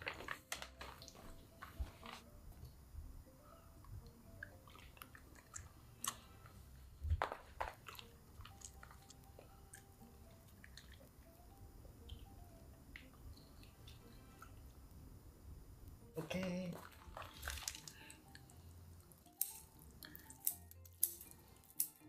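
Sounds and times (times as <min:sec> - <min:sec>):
wet mouth sounds: 0:04.4 - 0:06.4
crunchy chewing of fried chicken: 0:07.3 - 0:11.1.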